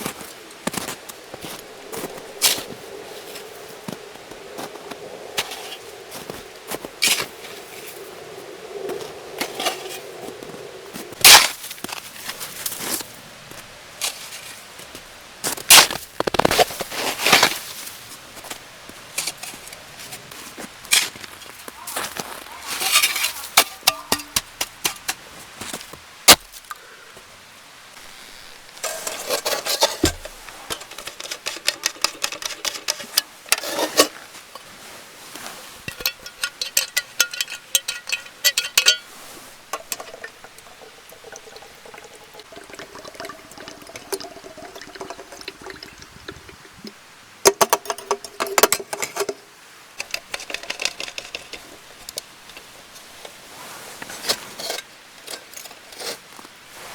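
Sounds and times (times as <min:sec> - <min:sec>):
pots and utensils clattering: 0:22.7 - 0:25.2, 0:28.8 - 0:34.7, 0:35.6 - 0:46.8, 0:47.4 - 0:53.4, 0:54.0 - 0:56.2
liquid pouring: 0:36.0 - 0:49.3.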